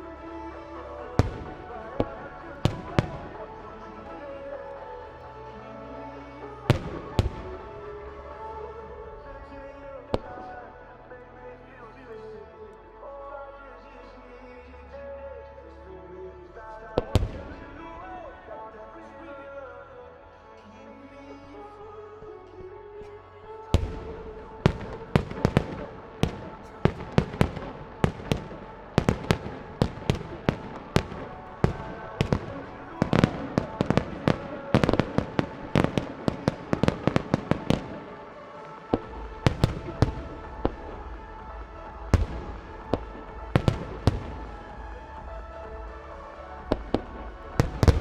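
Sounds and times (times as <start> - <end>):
fireworks bursting: 0.0 - 5.0, 6.4 - 8.5, 23.5 - 48.0
music: 0.0 - 48.0.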